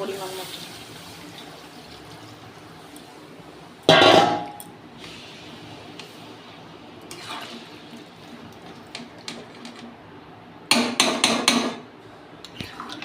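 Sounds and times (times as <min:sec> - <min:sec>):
curry hissing in a pan: 0:00.0 - 0:03.8, 0:04.9 - 0:08.9.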